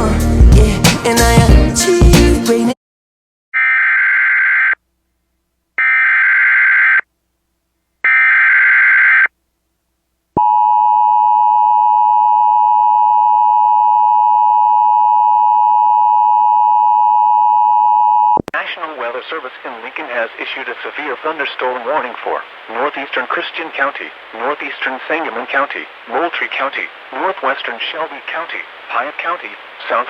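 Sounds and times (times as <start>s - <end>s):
shrill data tone warble: 5.8s - 7.0s, 8.1s - 9.3s.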